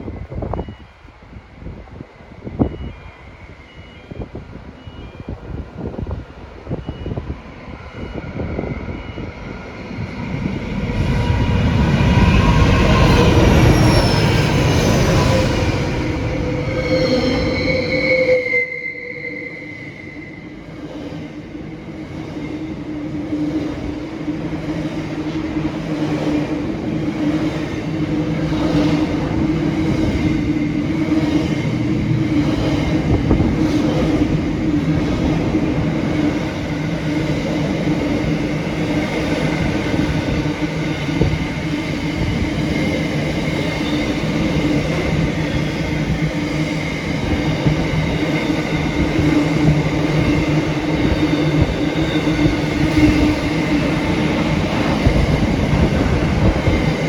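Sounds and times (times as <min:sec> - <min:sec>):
train running past: 0:00.0 - 0:57.0
train horn: 0:12.9 - 0:20.6.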